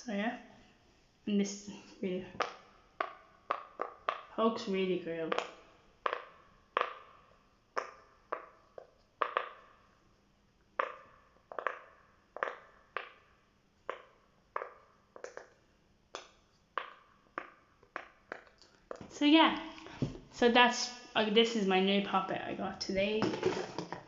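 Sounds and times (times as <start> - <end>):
pop-it toy bubbles popping: 2.3 - 4.4, 5.1 - 9.8, 10.8 - 18.6.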